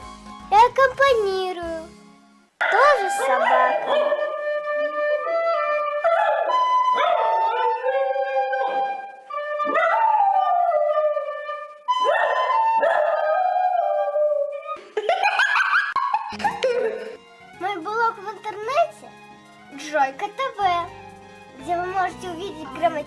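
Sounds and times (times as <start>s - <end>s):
dog howling: 2.6s - 4.4s, 5.2s - 14.8s
held instrument notes: 16.3s - 23.0s.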